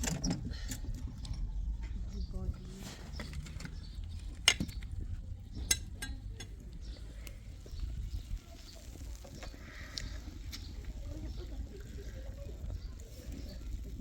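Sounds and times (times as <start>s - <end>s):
light clinks and knocks: 3.1s - 6.6s.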